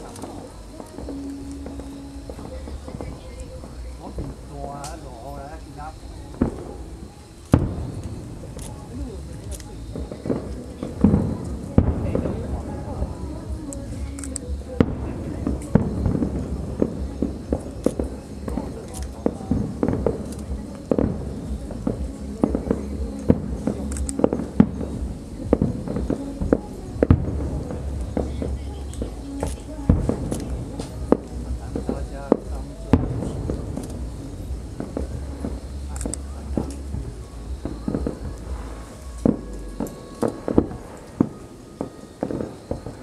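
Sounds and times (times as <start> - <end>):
low rumble: 0.0 - 41.5
fireworks bangs and pops: 0.0 - 43.0.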